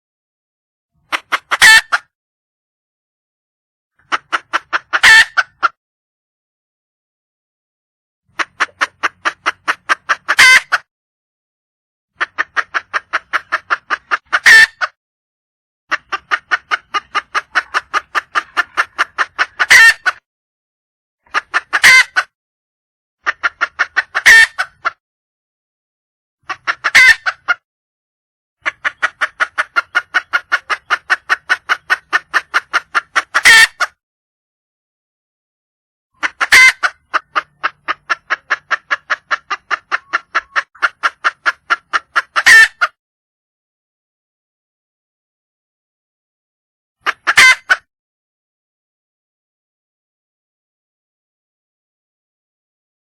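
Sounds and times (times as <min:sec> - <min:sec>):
hen clucking: 0:01.0 - 0:02.1, 0:04.0 - 0:05.8, 0:08.3 - 0:10.9, 0:12.2 - 0:15.0, 0:15.9 - 0:20.2, 0:21.3 - 0:22.3, 0:23.2 - 0:25.0, 0:26.4 - 0:27.6, 0:28.6 - 0:34.0, 0:36.2 - 0:43.0, 0:47.0 - 0:47.9.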